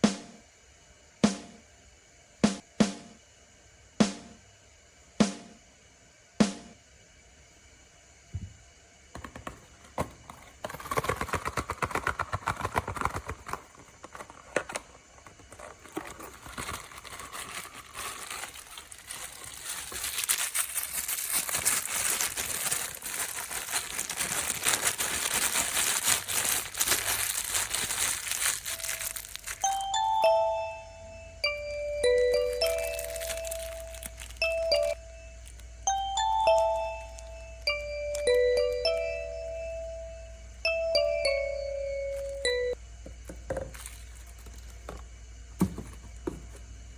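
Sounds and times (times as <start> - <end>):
packaging crinkling and tearing: 10.3 - 30.3, 32.0 - 39.0, 42.1 - 42.5, 43.5 - 45.0.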